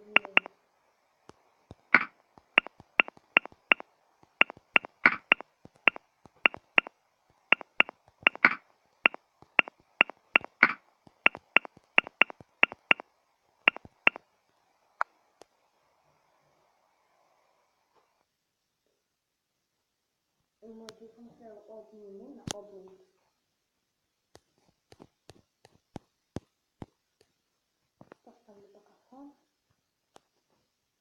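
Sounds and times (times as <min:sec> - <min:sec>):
smartphone keyboard taps: 0:00.2 - 0:00.5, 0:01.7 - 0:06.9, 0:07.5 - 0:13.0, 0:13.7 - 0:14.2.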